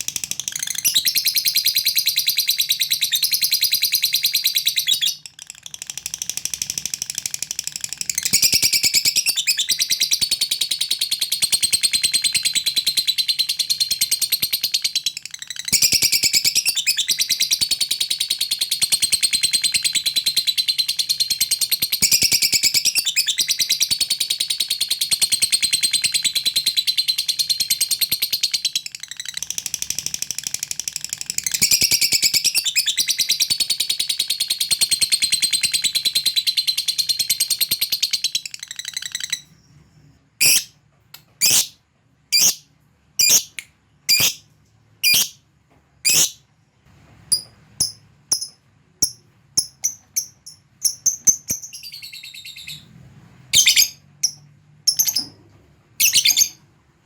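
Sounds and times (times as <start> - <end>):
bird trilling chatter: 43.2 - 44.4.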